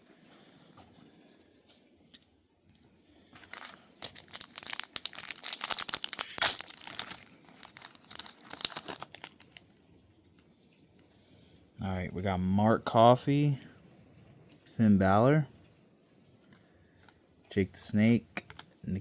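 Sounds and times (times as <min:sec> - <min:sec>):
foil wrapper tearing and crinkling: 0:03.4 - 0:09.8.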